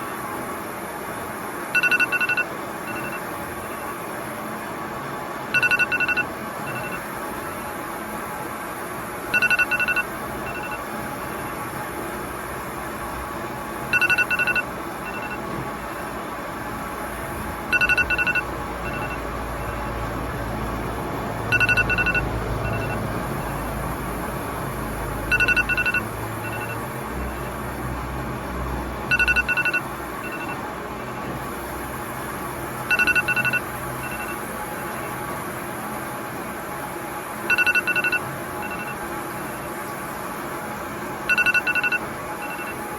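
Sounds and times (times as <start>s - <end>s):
electronic telephone ringing: 1.8s - 3.3s, 5.5s - 7.1s, 9.3s - 11.3s, 13.9s - 15.5s, 17.6s - 20.0s, 21.5s - 23.8s, 25.2s - 27.4s, 29.1s - 30.6s, 32.9s - 34.4s, 37.5s - 39.0s, 41.3s - 42.8s.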